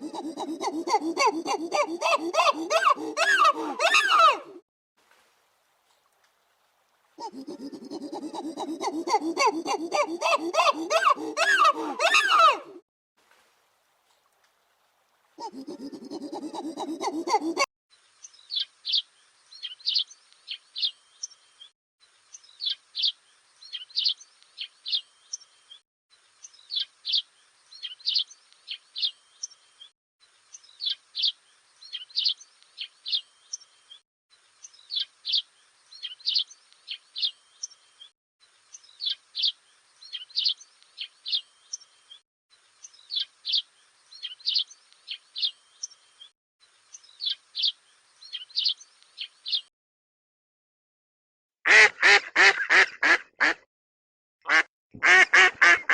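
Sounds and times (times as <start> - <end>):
songbird chirping: 0.0 - 4.6, 7.2 - 12.8, 15.4 - 49.7.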